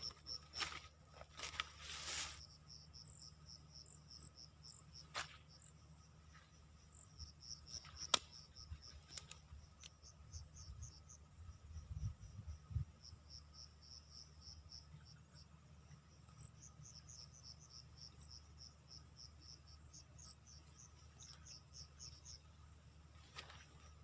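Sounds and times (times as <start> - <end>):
rustling: 0.0 - 2.4
insects chirping: 0.0 - 24.0.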